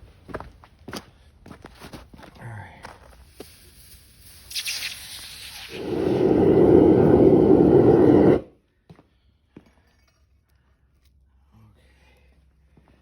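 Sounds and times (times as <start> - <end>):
loud rushing roar: 5.7 - 8.5.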